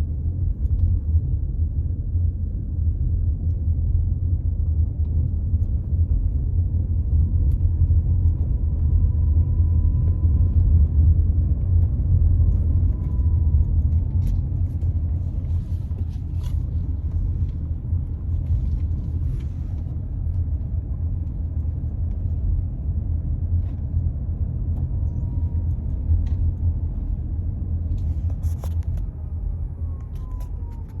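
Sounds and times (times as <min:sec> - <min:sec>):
low road rumble: 0:00.0 - 0:31.0.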